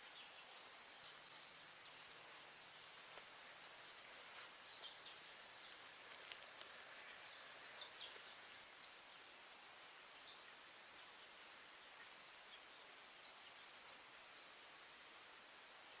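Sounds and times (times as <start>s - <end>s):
forest ambience: 0.0s - 16.0s
small sharp clicks: 5.7s - 6.8s.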